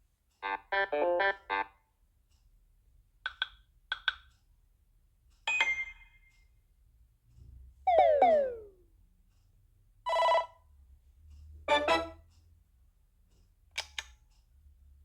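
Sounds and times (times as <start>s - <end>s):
phone notification tune: 7.9s - 8.7s
short high blips: 7.9s - 8.8s.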